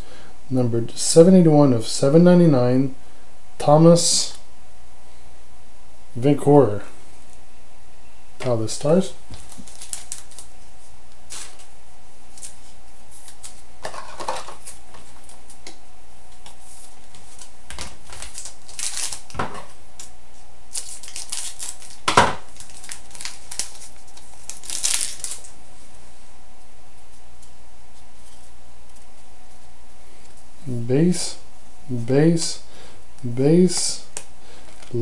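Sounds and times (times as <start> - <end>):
card wrapper tearing and crinkling: 9.3 - 10.5, 11.3 - 11.7, 16.9 - 20.1, 20.7 - 25.6.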